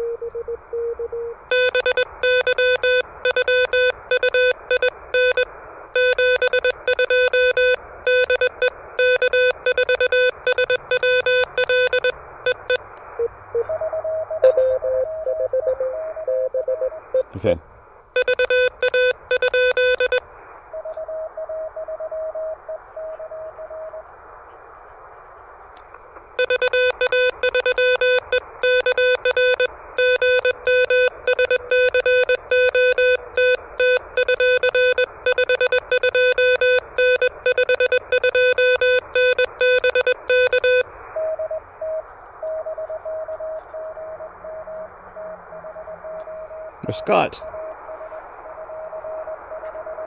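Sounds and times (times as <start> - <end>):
faint high-pitched morse code: 0.0 - 17.3, 18.2 - 20.2, 26.4 - 50.0
buzzy morse code sidetone: 1.5 - 12.8, 13.6 - 17.3, 18.2 - 20.2, 26.4 - 41.5
radio band hiss: 46.8 - 47.4.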